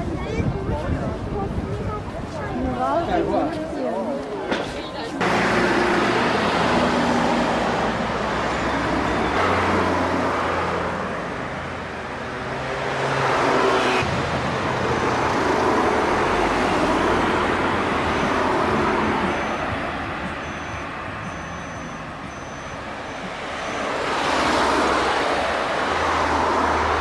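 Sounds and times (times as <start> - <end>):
engine humming: 14.0 - 27.0.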